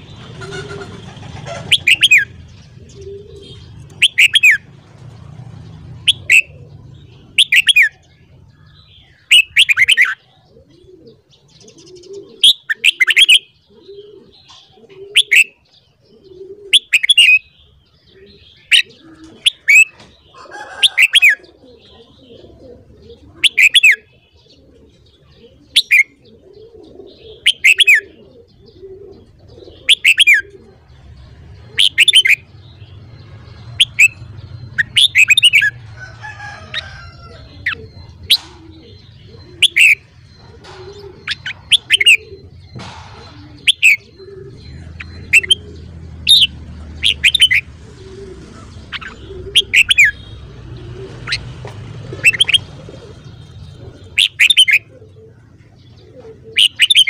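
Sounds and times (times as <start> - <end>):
bird calling: 0.0 - 57.0.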